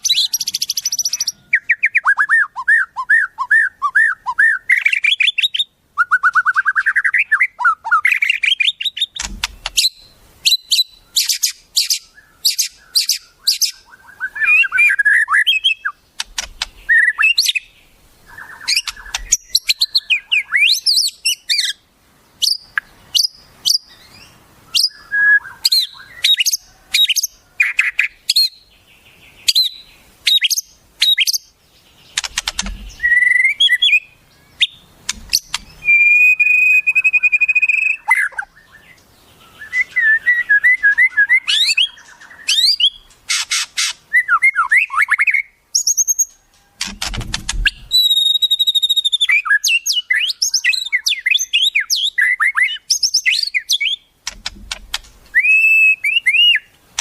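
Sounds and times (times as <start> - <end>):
bird singing whistles and trills: 0.0 - 21.8, 22.4 - 31.5, 32.1 - 46.8, 47.6 - 54.1, 55.3 - 57.0
low thumps: 32.3 - 33.0, 46.8 - 48.0.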